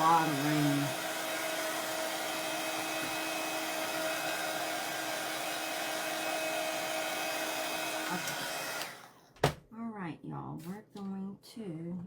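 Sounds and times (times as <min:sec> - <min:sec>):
electric dryer blowing: 0:00.0 - 0:09.3.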